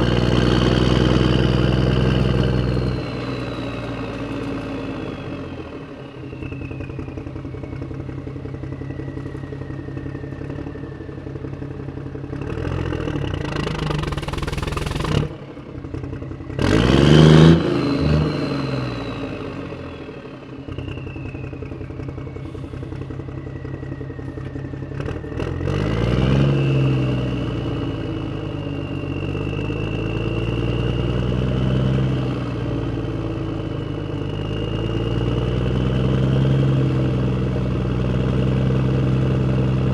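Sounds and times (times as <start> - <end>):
vehicle engine revving: 12.3 - 19.8, 25.0 - 27.9
faint high whine: 13.8 - 15.3.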